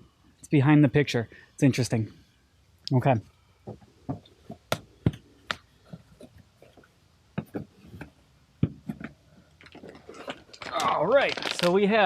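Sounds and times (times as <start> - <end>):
knocks and clicks of accessories handled: 3.6 - 10.8.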